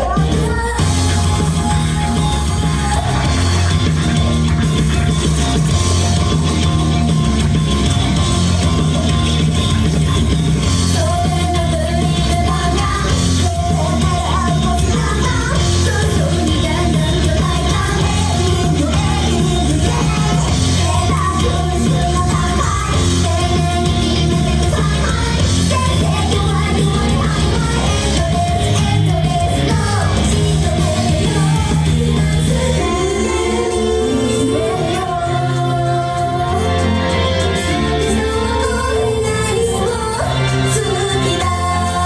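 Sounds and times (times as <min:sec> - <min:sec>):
live pop-rock music: 0:00.0 - 0:42.0
person singing: 0:10.6 - 0:42.0.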